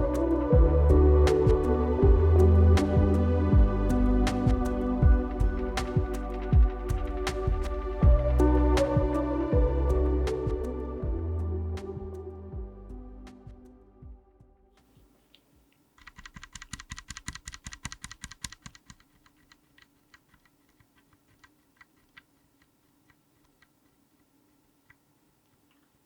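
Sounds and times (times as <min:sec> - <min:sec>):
mechanical keyboard typing: 0:16.0 - 0:23.8.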